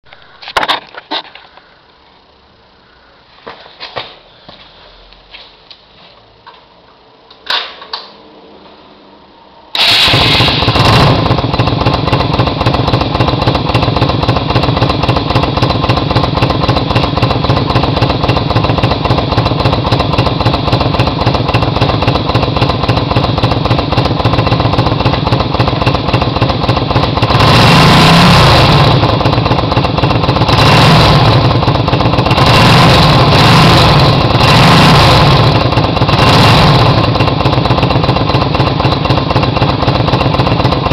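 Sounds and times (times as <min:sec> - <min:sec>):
engine starter clicks: 0:09.7 - 0:11.1
engine revving: 0:09.8 - 0:40.9
motorcycle engine idling: 0:09.8 - 0:40.9.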